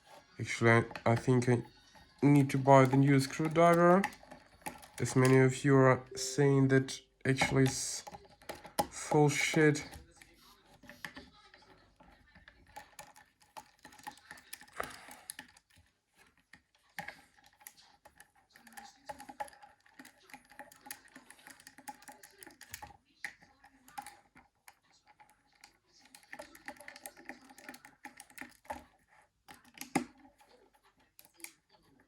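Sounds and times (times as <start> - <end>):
plastic housing being handled: 0.0 - 5.6
screwdriver clicks and taps: 29.5 - 30.5.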